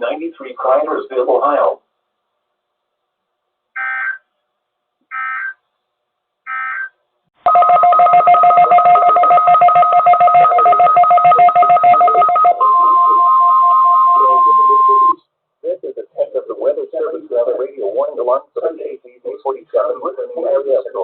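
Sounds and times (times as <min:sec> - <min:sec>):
short data tone bursts: 0:10.1 - 0:15.2.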